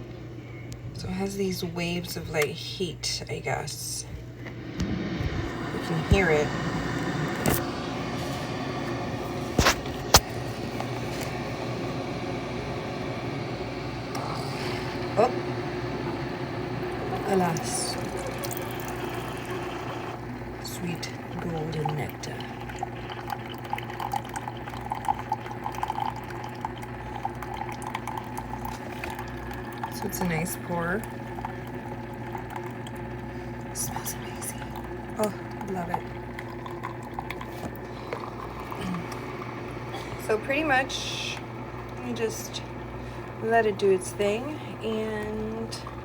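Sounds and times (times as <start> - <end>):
coffee maker humming: 0.0 - 46.0
coffee trickling into a cup: 16.1 - 39.8.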